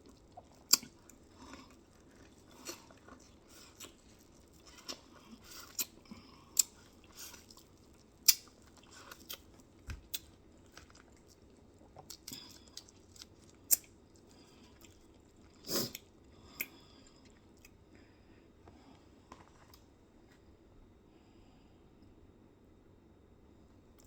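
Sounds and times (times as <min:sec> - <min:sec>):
person chewing crunchy food: 0:00.0 - 0:17.8.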